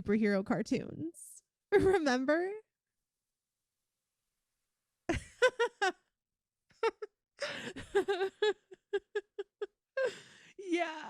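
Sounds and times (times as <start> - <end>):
woman laughing softly: 5.1 - 6.1, 6.8 - 10.4.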